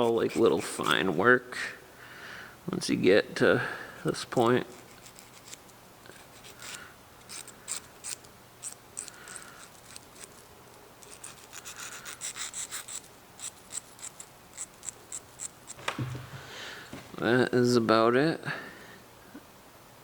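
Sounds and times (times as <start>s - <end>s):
hand file scraping metal: 0.0s - 1.2s, 4.4s - 15.6s.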